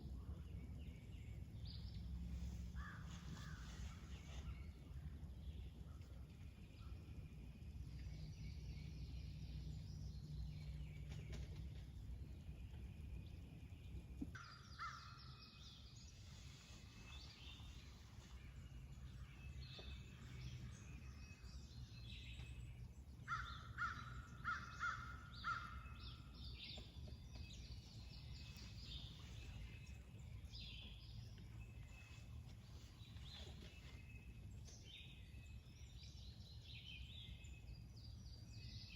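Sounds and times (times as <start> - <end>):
low steady rumble: 0.0 - 38.9
wild birds calling: 14.2 - 21.9, 22.8 - 37.6.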